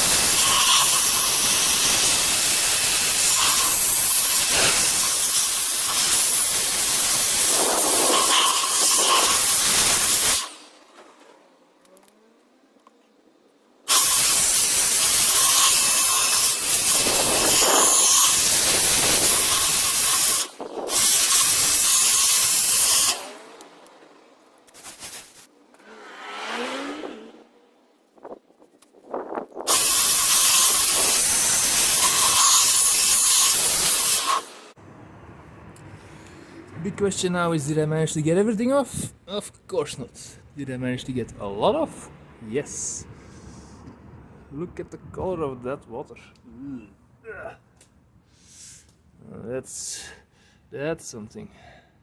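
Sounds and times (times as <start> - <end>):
compressed air blasts: 0.0 - 10.6, 13.9 - 23.3, 24.7 - 27.5, 29.7 - 34.8.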